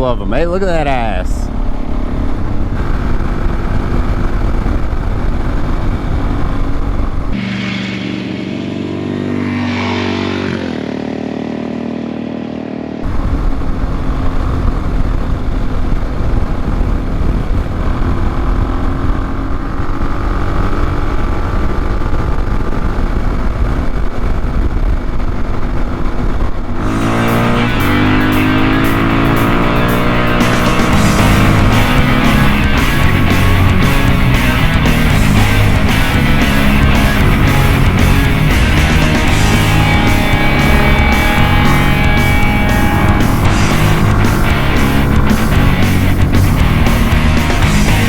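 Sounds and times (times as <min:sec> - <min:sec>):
wind rushing over microphone: 0:00.0 - 0:11.4, 0:13.0 - 0:48.0
motorcycle engine: 0:00.0 - 0:48.0
guitar music: 0:06.1 - 0:12.0, 0:26.9 - 0:48.0.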